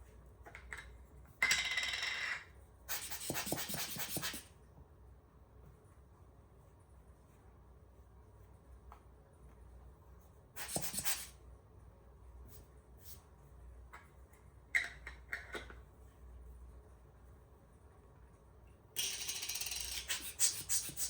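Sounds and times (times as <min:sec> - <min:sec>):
rubbing sound: 0:02.9 - 0:04.4, 0:10.6 - 0:11.3, 0:20.0 - 0:21.0.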